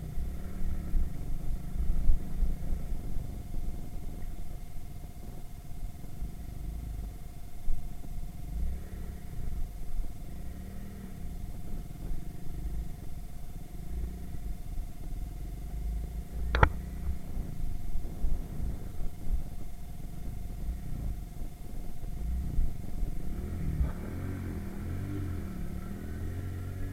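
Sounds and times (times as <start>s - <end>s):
moped engine running: 0.0s - 26.9s
sharp click: 16.5s - 16.8s.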